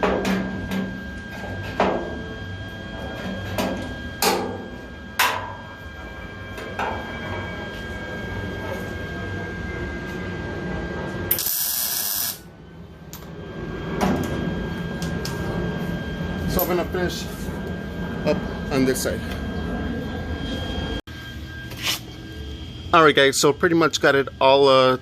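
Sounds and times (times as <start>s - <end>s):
tack weld hissing: 11.3s - 12.4s.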